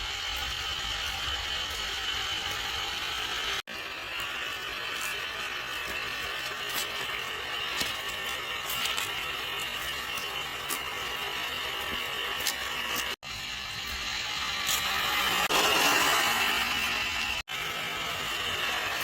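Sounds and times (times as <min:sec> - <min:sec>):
toy car motor whirring: 0:00.0 - 0:19.0.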